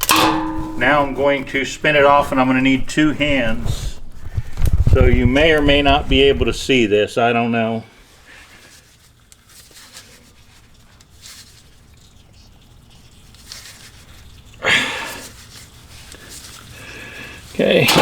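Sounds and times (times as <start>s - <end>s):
oil filter scraping and clicking: 0.0s - 6.6s, 15.2s - 18.0s.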